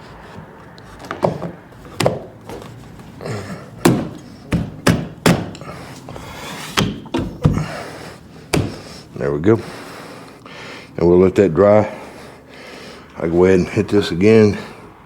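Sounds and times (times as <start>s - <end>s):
sharp knocks on plastic board: 3.8s - 5.6s, 6.8s - 7.6s, 8.5s - 8.8s.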